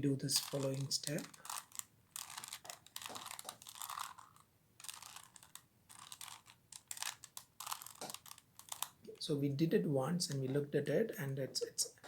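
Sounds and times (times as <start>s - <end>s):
puzzle cube clicking and clacking: 0.3s - 9.1s.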